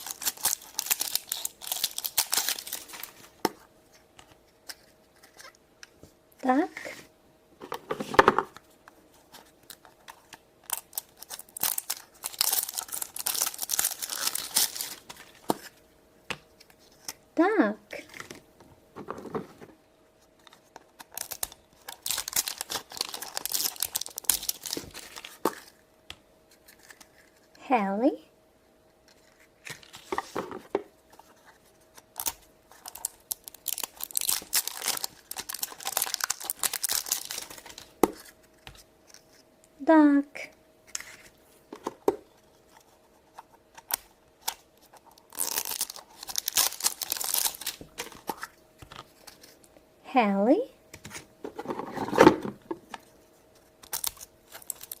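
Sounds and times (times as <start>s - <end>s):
plastic packaging tearing: 0.0s - 3.3s, 10.6s - 15.3s, 21.0s - 25.4s, 32.2s - 38.3s, 43.8s - 48.5s, 53.8s - 55.0s
plastic wrapper crinkling: 0.0s - 3.4s, 9.6s - 15.6s, 20.8s - 25.8s, 32.1s - 39.4s, 43.8s - 49.6s, 53.8s - 55.0s
plastic crackling and rustling: 0.0s - 3.6s, 9.4s - 15.8s, 20.3s - 25.8s, 29.0s - 39.4s, 43.4s - 49.6s, 51.4s - 55.0s.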